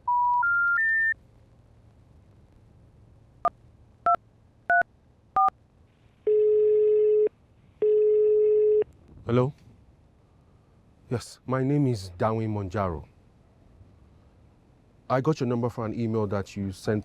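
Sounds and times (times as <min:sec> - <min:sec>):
telephone ringback tones: 0:06.3 - 0:08.9.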